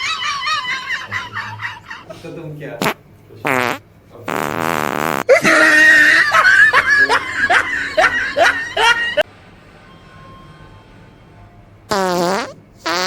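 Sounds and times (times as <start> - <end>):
loud laughter: 0.0 - 2.2, 5.3 - 9.2
fake fart sound: 2.8 - 6.2, 11.9 - 13.0.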